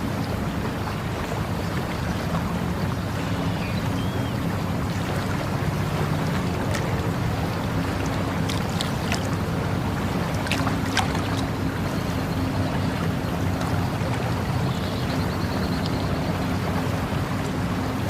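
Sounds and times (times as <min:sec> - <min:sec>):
water flowing: 0:00.0 - 0:18.0
water splashing or dripping: 0:04.8 - 0:11.6.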